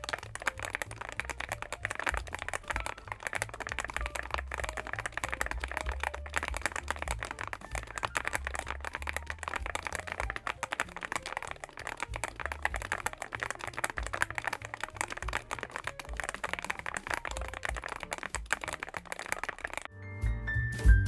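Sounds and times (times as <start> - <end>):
mechanical keyboard typing: 0.0 - 19.9.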